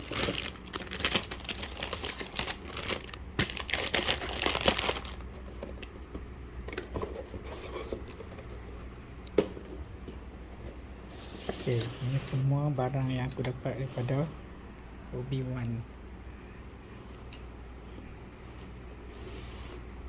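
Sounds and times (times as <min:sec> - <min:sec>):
packaging crinkling: 0:00.0 - 0:05.8.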